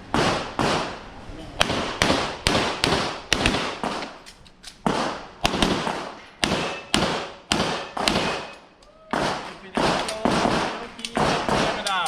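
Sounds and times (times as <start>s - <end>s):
handgun shots: 1.6s - 4.2s, 4.8s - 12.0s.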